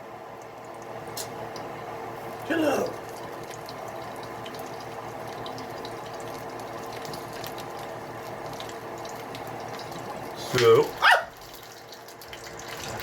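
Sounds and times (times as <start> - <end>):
batter sizzling in hot oil: 0.0 - 13.0.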